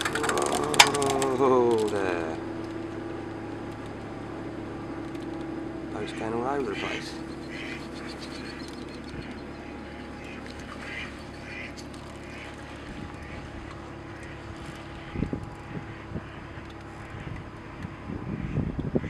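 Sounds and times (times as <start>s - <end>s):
boat engine humming: 0.0s - 19.0s
ducks quacking: 6.0s - 17.4s.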